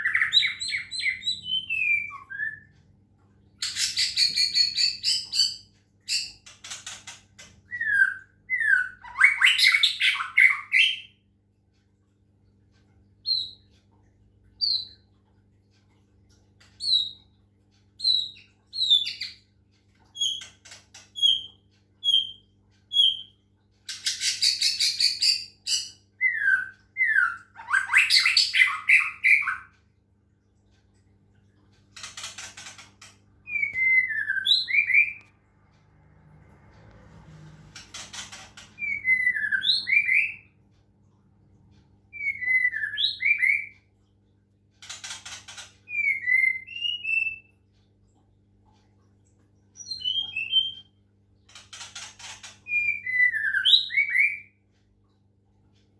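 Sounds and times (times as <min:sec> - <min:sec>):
bird singing whistled notes: 0:00.1 - 0:02.7, 0:33.4 - 0:35.2, 0:38.8 - 0:40.5, 0:42.1 - 0:43.7, 0:45.9 - 0:47.5, 0:49.8 - 0:50.9, 0:52.7 - 0:54.6
bird harsh rattling: 0:32.0 - 0:33.2, 0:44.8 - 0:45.8.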